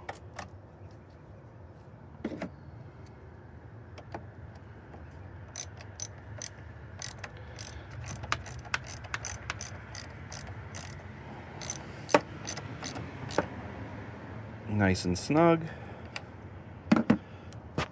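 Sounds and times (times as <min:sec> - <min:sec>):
tool handling clicks and knocks: 0:04.0 - 0:11.0, 0:11.6 - 0:13.5, 0:16.9 - 0:17.2
hand ratchet clicking: 0:05.5 - 0:11.0, 0:11.6 - 0:13.5.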